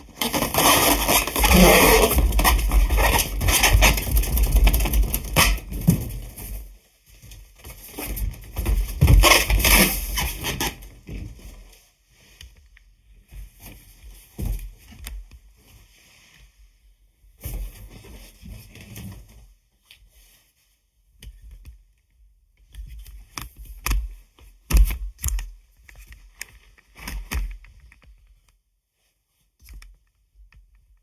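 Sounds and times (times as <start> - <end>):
balloon rubbery squeaks: 0.2 - 4.4, 5.3 - 5.7, 9.0 - 10.8.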